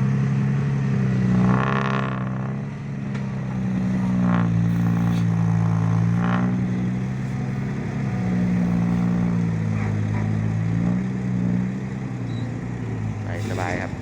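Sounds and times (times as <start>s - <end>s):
diesel engine running: 0.0s - 14.0s
higher-pitched engine bursts: 12.3s - 14.0s.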